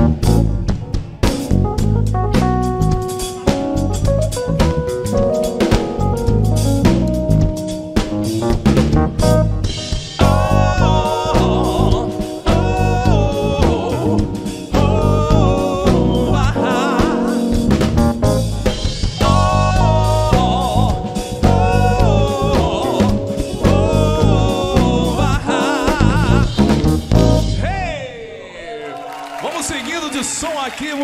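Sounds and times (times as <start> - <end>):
live funk band playing: 0.0 - 28.0.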